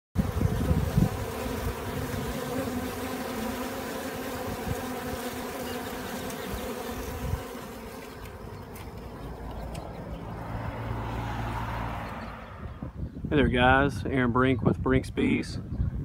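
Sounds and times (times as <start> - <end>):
honeybees buzzing: 0.2 - 12.4.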